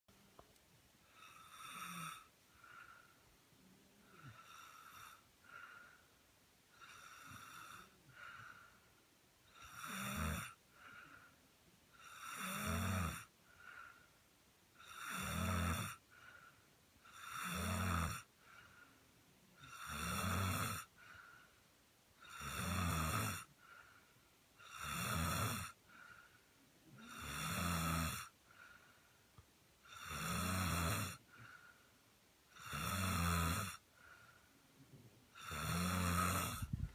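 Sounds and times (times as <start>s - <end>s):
woman snoring: 1.1s - 6.0s, 6.7s - 8.7s, 9.4s - 11.3s, 11.9s - 14.0s, 14.8s - 18.8s, 19.6s - 21.4s, 22.2s - 23.9s, 24.6s - 26.2s, 26.8s - 28.8s, 29.8s - 31.6s, 32.5s - 34.2s, 35.3s - 36.9s
faint breath: 2.2s - 9.7s, 10.6s - 12.0s, 13.3s - 14.4s, 16.0s - 17.0s, 18.2s - 19.5s, 20.8s - 21.8s, 23.4s - 24.5s, 25.7s - 27.1s, 28.3s - 29.5s, 31.2s - 32.2s, 33.8s - 35.2s.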